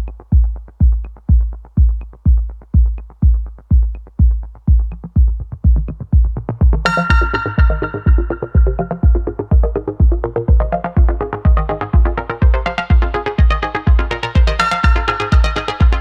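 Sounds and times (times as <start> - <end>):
electronic music: 0.0 - 16.0
heavy kick drum: 0.0 - 16.0
bright synth: 6.9 - 16.0.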